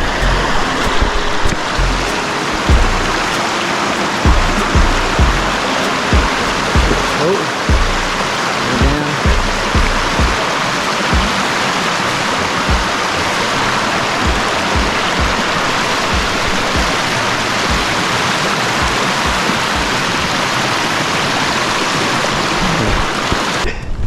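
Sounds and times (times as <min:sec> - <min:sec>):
dull low thumps: 0:00.0 - 0:03.3, 0:04.2 - 0:10.5, 0:12.7 - 0:13.0, 0:14.2 - 0:18.0
waterfall roaring: 0:00.0 - 0:23.7.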